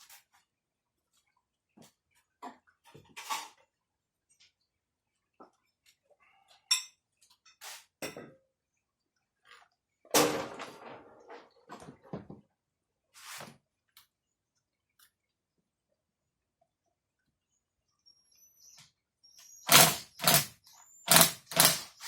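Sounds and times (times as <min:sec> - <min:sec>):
metal tools clinking: 0:21.1 - 0:21.9.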